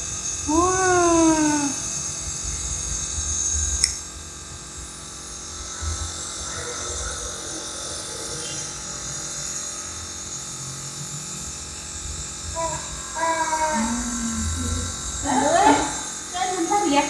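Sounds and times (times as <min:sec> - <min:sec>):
air hissing through mask: 0:00.0 - 0:04.1, 0:12.0 - 0:17.0
nebuliser motor buzz: 0:00.0 - 0:06.6, 0:07.2 - 0:17.0
sharp click: 0:03.8 - 0:04.0.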